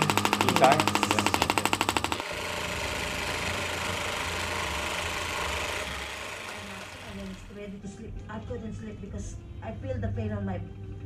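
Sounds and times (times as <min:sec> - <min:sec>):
rapid sharp taps: 0:00.0 - 0:02.4
steady motor hum: 0:00.0 - 0:07.7.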